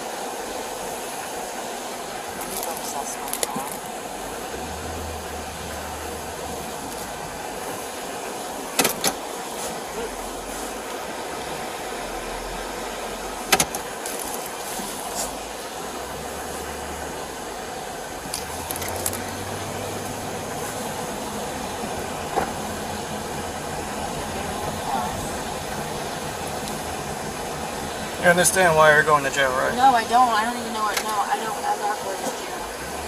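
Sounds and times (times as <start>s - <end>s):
car road and engine noise: 0.0s - 33.0s.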